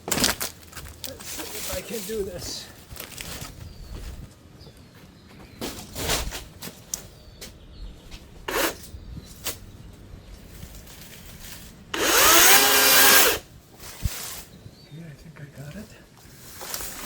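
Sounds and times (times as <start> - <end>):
chainsaw cutting wood: 8.5 - 8.9, 11.0 - 14.5.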